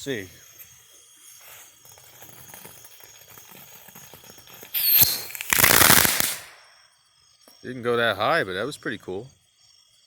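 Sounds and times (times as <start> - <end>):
firework burst with whistle: 4.7 - 6.6
firework rushing hiss: 4.7 - 6.6
fuse crackling: 4.7 - 6.6.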